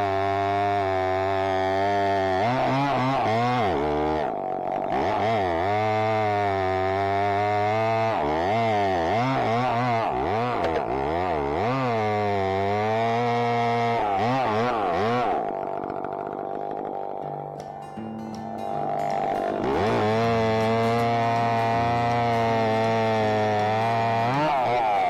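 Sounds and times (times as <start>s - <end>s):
chainsaw running at high revs: 0.0s - 25.0s.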